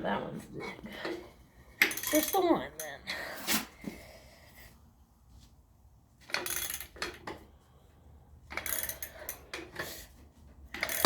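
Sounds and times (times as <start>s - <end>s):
metallic clicking and clinking: 1.8s - 2.9s, 10.7s - 11.0s.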